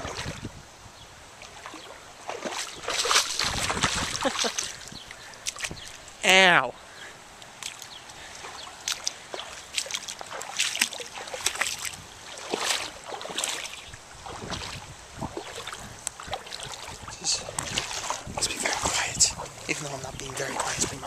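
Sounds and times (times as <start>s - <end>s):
splashing of wading in river: 0.0s - 0.5s, 1.3s - 6.2s, 7.4s - 21.0s.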